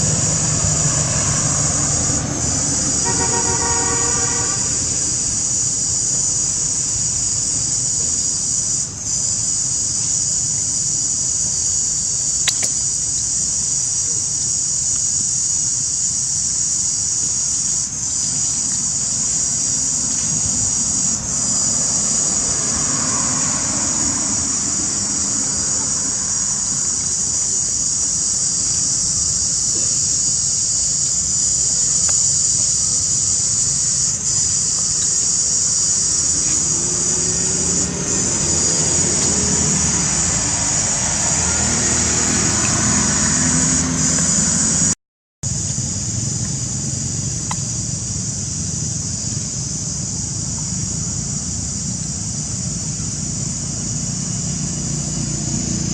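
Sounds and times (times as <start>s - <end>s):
vehicle engine passing: 0.0s - 7.0s, 18.0s - 45.0s, 45.8s - 55.9s
insect chorus buzzing: 0.0s - 55.9s.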